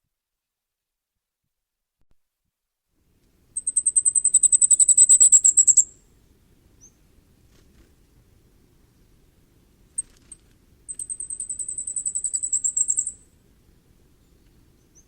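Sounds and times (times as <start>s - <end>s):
bird singing high thin notes: 10.9s - 13.2s.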